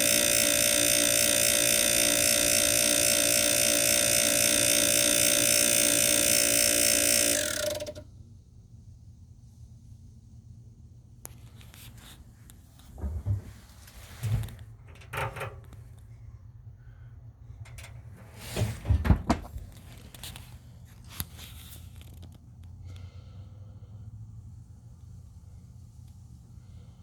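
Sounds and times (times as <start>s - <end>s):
pellet grill humming: 0.0s - 8.1s, 16.8s - 22.0s
loud irregular clunks and knocks: 18.4s - 19.7s.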